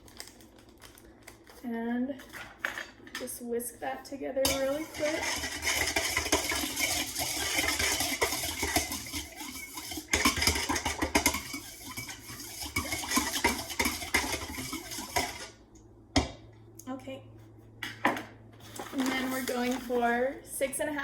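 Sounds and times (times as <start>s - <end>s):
whisk clinking and scraping in bowl: 4.4s - 15.6s, 18.9s - 20.2s.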